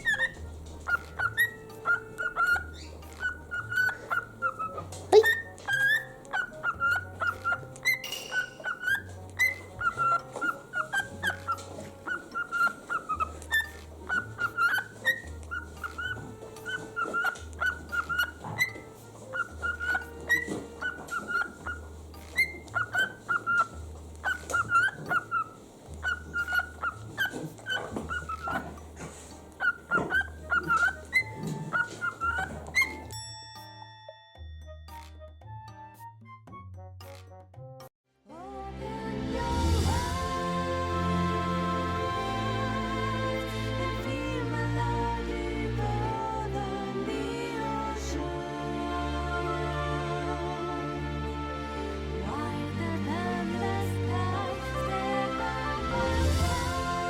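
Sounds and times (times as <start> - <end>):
parrots chirping: 0.0 - 33.3, 51.0 - 57.0.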